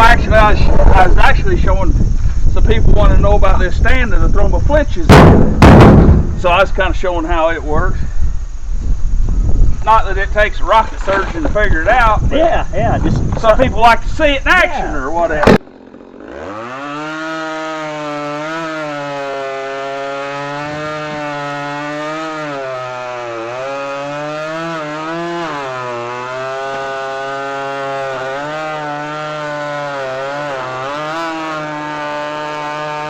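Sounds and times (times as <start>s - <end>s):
chainsaw cutting wood: 15.4s - 33.0s.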